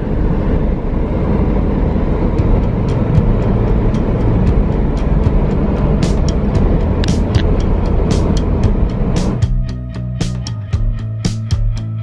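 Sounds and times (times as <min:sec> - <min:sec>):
car engine and road noise: 0:00.0 - 0:12.0
light rhythmic ticking: 0:02.4 - 0:12.0.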